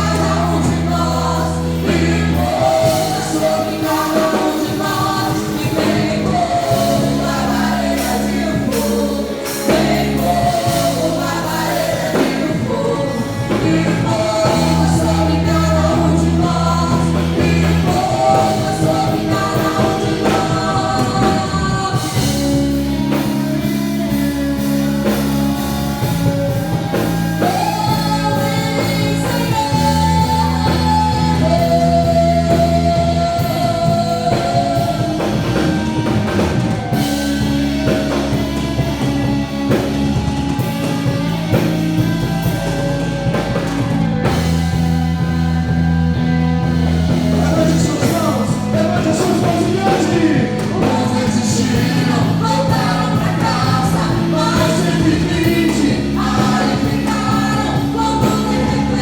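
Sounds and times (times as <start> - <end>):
held low chords: 0.0 - 59.0.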